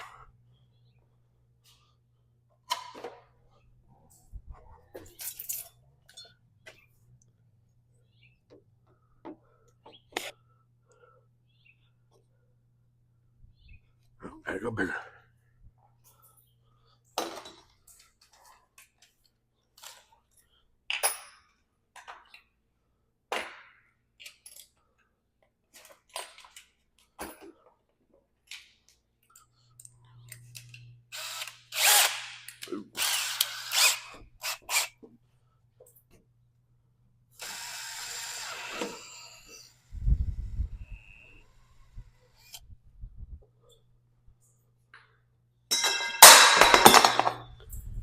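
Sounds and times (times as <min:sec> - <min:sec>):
power drill boring plastic: 0:31.1 - 0:32.2, 0:33.0 - 0:34.9, 0:37.4 - 0:39.9.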